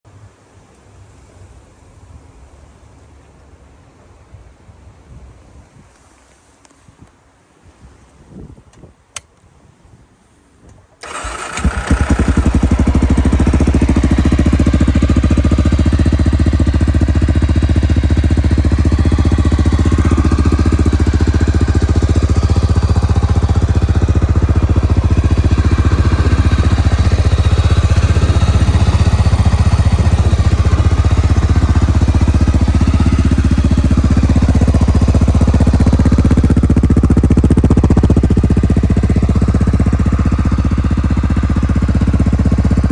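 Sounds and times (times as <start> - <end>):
click: 8.7 - 9.4
motorcycle engine idling: 11.0 - 42.9.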